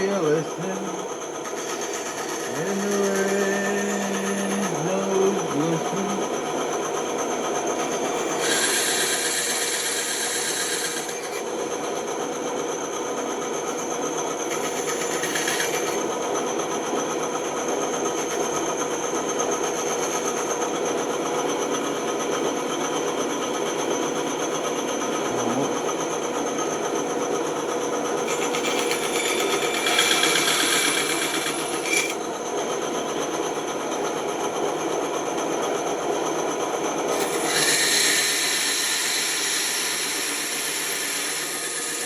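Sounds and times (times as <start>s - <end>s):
bandsaw running: 0.0s - 6.5s, 7.7s - 11.5s, 14.4s - 16.2s, 28.1s - 32.2s, 36.9s - 42.0s.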